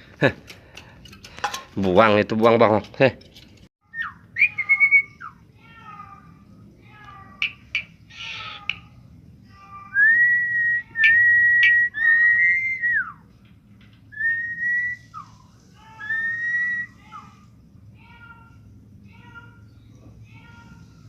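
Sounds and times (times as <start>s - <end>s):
long clear whistles: 3.9s - 5.4s, 10.0s - 13.2s, 14.1s - 17.5s.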